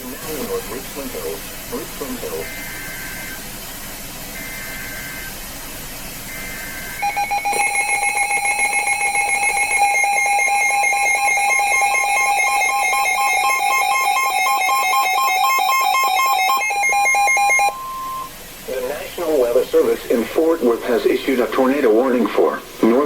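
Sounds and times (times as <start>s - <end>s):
loud two-tone alarm: 2.4s - 3.5s, 4.3s - 5.4s, 6.3s - 18.4s
warbling data burst: 6.3s - 18.4s.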